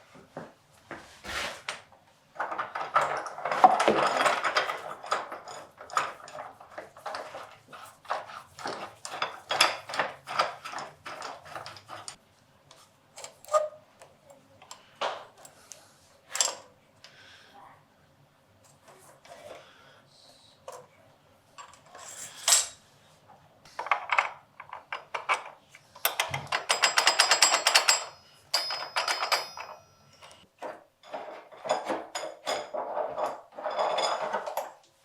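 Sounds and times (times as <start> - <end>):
metal and wooden parts clinking: 2.4 - 12.2, 23.8 - 30.4, 31.0 - 34.9.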